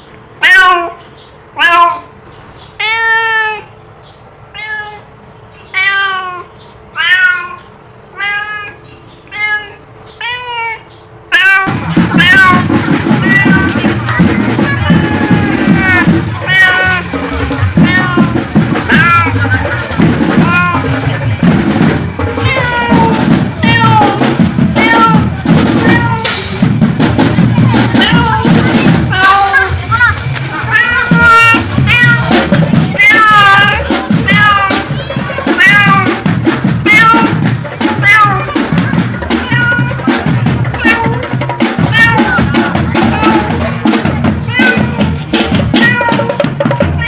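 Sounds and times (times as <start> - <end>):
cat meowing: 0.4 - 1.0, 1.6 - 2.1, 2.8 - 3.8, 4.5 - 17.1, 17.8 - 19.4, 20.4 - 20.9, 22.4 - 24.2, 24.8 - 26.3, 28.0 - 29.7, 30.6 - 36.2, 36.8 - 43.6, 44.4 - 46.4
music with drum beat: 10.8 - 47.0.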